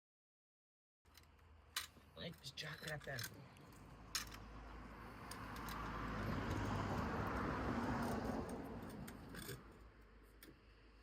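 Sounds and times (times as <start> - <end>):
car driving past: 3.9 - 9.8.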